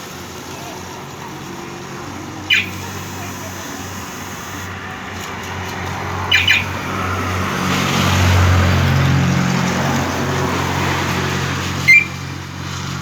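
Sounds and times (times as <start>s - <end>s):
motorcycle engine idling: 0.0s - 7.0s
short sharp alarm beep: 2.5s - 4.7s.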